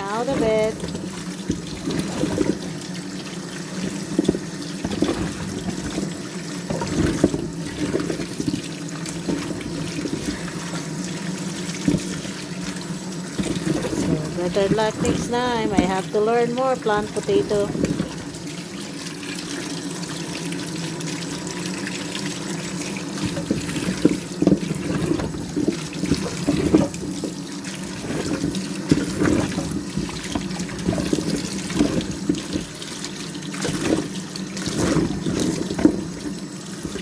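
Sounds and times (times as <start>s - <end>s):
tap water running into a sink: 0.0s - 37.0s
potatoes splashing and knocking: 0.1s - 2.9s, 3.7s - 10.9s, 13.4s - 18.4s, 23.1s - 37.0s.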